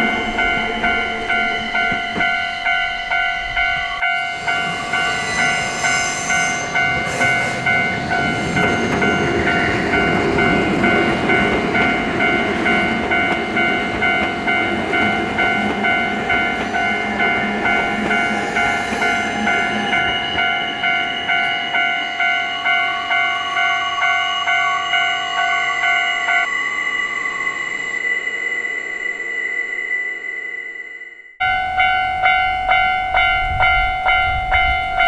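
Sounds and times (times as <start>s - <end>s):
train wheels rumbling on rails: 0.0s - 23.6s, 31.4s - 35.0s
level-crossing bell ringing: 0.0s - 26.5s, 31.4s - 35.0s.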